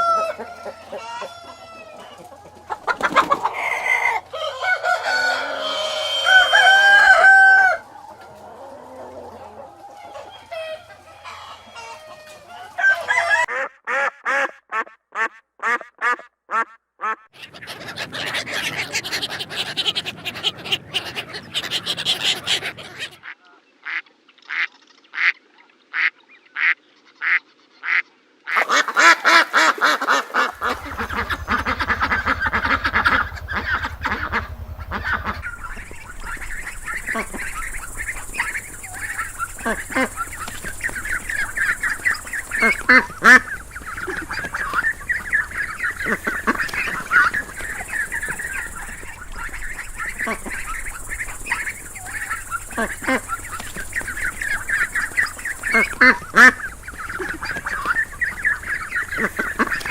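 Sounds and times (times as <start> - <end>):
gliding crow-like poultry calls: 0.0 - 14.5, 27.9 - 59.9
noisy poultry flock: 0.0 - 14.5, 15.7 - 25.4, 26.0 - 59.9
poultry clucking: 0.0 - 14.5, 17.0 - 23.3, 28.5 - 59.9
waterfowl honking and quacking: 0.0 - 59.9.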